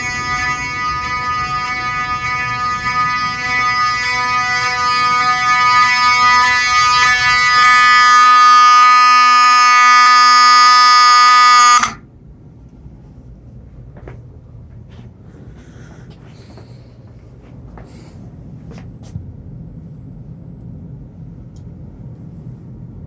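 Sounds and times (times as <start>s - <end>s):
fire alarm buzzing horn: 0.0s - 12.0s.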